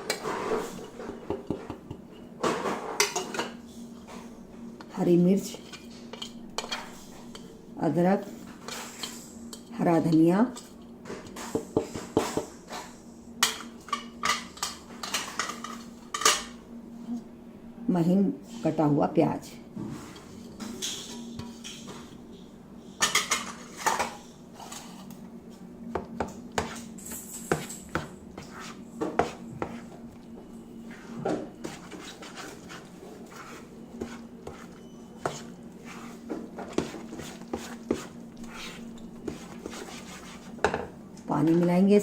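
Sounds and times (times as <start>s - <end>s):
faint hum: 0.0s - 42.0s
spoon scraping a bowl: 26.6s - 30.0s, 30.9s - 40.6s.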